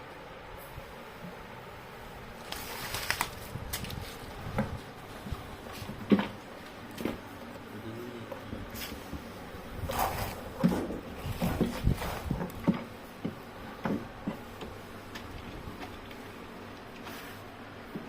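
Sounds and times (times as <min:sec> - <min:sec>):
packaging rustling: 0:02.4 - 0:04.4.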